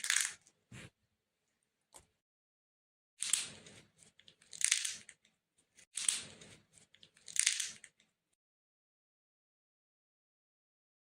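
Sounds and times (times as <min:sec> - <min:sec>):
nut shells cracking: 0:00.0 - 0:00.5, 0:04.3 - 0:05.3, 0:07.0 - 0:08.1.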